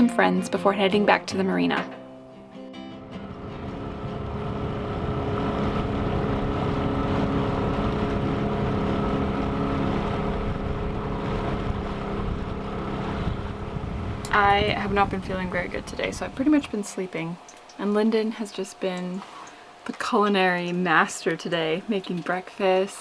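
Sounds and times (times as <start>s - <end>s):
boat engine droning: 2.9s - 23.0s
water noise: 3.1s - 23.0s
wind: 3.2s - 17.8s.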